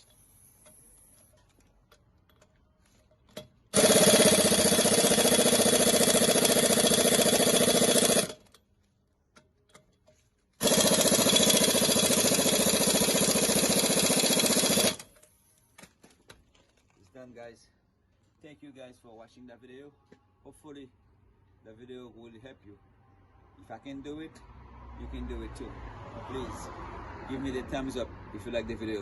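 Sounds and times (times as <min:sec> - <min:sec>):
impact wrench running: 0:03.4 - 0:08.6, 0:10.6 - 0:15.2.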